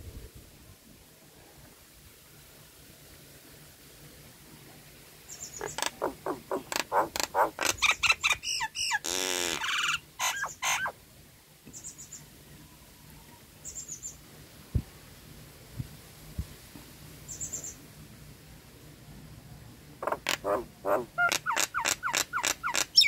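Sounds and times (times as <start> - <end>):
myna whistled calls: 5.3 - 11.0, 20.9 - 23.0
harsh buzzy bird call: 5.6 - 11.0, 20.0 - 23.0.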